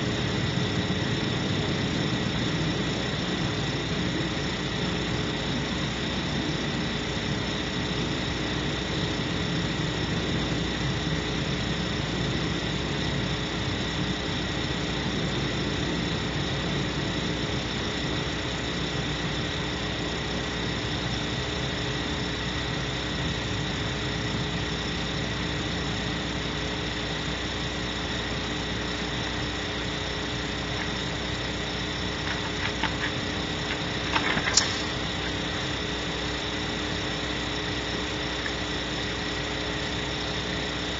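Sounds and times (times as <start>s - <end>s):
electrical hum: 0.0s - 40.9s
steady hiss: 27.3s - 40.7s.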